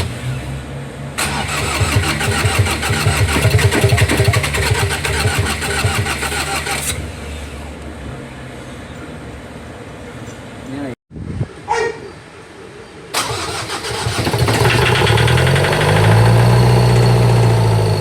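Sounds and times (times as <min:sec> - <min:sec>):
diesel engine cranking on starter: 0:00.0 - 0:00.6, 0:01.2 - 0:07.7, 0:13.1 - 0:18.0.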